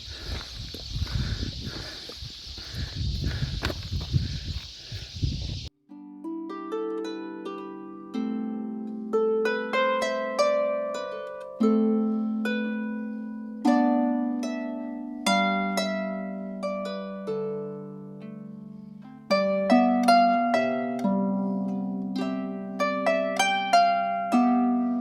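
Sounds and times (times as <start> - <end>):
harp playing slow tune: 5.8 - 25.0.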